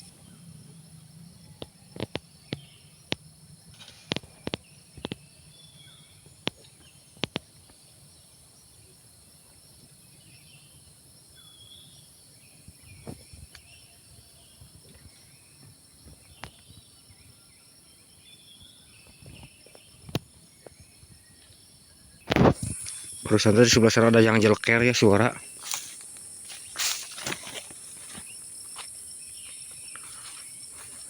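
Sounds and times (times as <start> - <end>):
high-pitched insect drone: 22.3 - 31.0.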